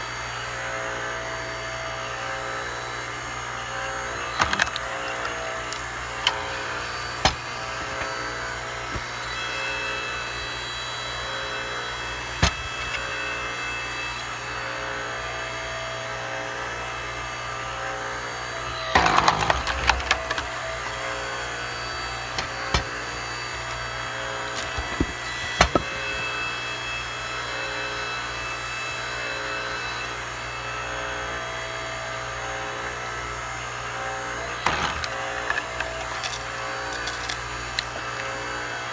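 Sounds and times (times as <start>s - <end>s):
log splitter humming: 3.8s - 14.5s, 18.4s - 27.0s, 34.3s - 38.9s
wood cracking and splintering: 4.2s - 9.4s, 12.4s - 13.2s, 18.7s - 26.4s, 34.6s - 38.4s.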